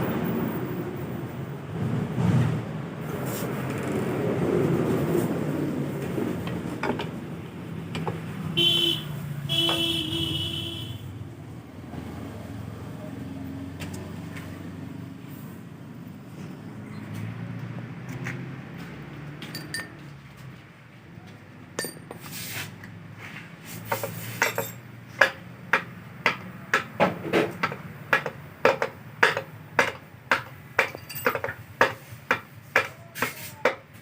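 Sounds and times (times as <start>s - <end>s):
metal-on-metal hammer strikes: 24.4s - 33.8s.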